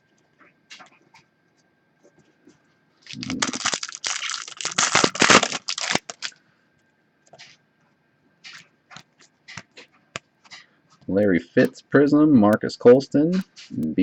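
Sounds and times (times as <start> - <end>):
wrapper tearing and crinkling: 3.0 - 6.4.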